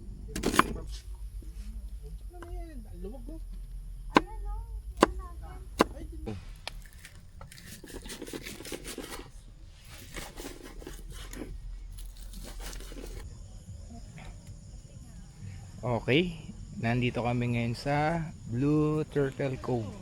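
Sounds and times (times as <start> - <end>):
rustling and crinkling: 5.8 - 13.2.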